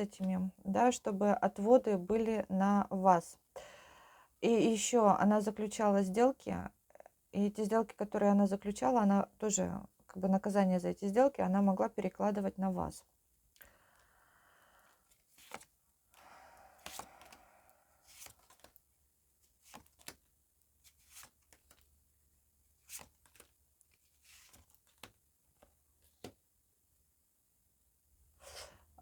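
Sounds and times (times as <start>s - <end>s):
cards clicking and rustling: 15.2s - 15.7s, 16.8s - 17.4s, 18.1s - 18.8s, 19.6s - 21.9s, 22.8s - 26.4s.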